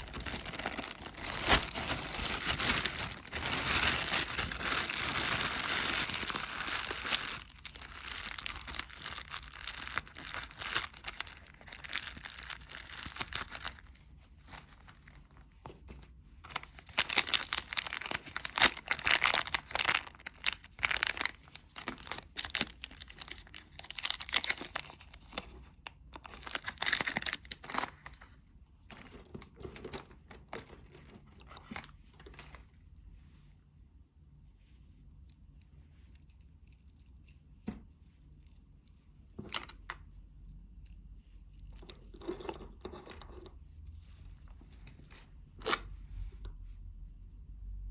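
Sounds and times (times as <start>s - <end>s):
material crinkling and tearing: 0.0s - 28.4s.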